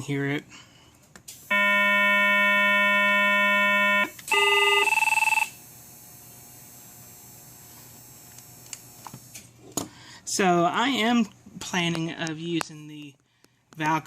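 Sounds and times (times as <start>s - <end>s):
telephone buzzer buzzing: 1.5s - 9.3s.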